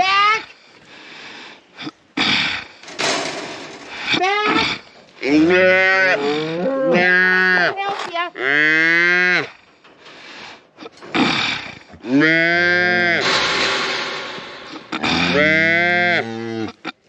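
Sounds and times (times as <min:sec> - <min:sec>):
cattle mooing loudly: 0:04.5 - 0:07.7, 0:11.2 - 0:13.2, 0:15.0 - 0:16.8.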